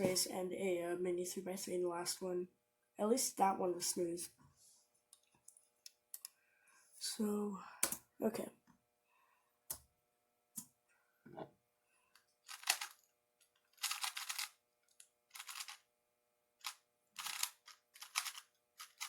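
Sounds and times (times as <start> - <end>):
speed cube clicking: 12.5 - 13.0, 13.8 - 14.5, 15.3 - 15.8, 16.6 - 19.0.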